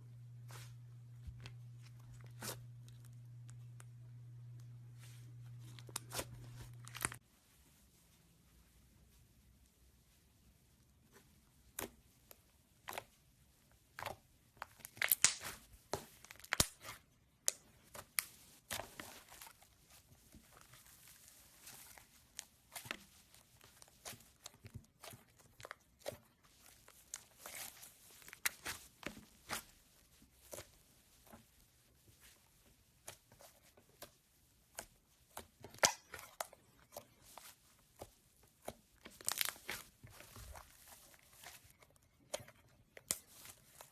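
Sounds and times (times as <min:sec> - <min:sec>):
slime squished by hand: 0:13.9 - 0:29.8, 0:32.9 - 0:43.9.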